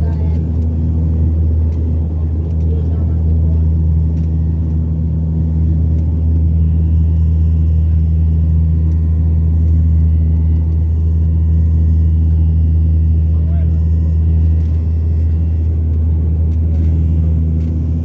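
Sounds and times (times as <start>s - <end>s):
airliner engine rumble: 0.0s - 18.0s
faint engine whine: 0.0s - 18.0s.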